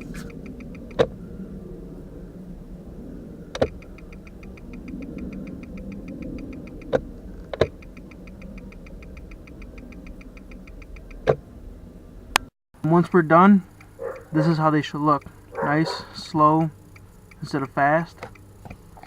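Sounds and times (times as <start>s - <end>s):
turn signal flasher ticking rapidly: 0.0s - 1.2s, 3.5s - 11.4s, 12.8s - 19.0s
steady low hum: 0.0s - 19.0s
sharp loud clicks: 3.5s - 11.4s, 12.4s - 19.0s.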